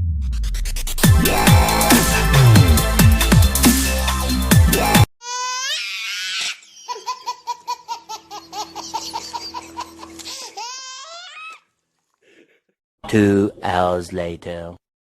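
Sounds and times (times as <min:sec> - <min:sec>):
dubstep music: 0:00.0 - 0:05.1
high-pitched laughing: 0:06.4 - 0:10.7.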